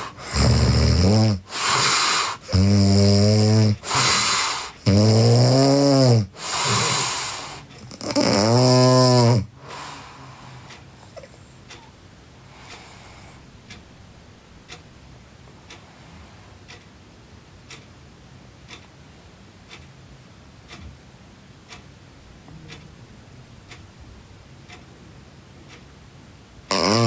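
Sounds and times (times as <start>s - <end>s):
clock ticking: 10.4s - 12.8s, 13.4s - 15.9s, 16.6s - 26.0s.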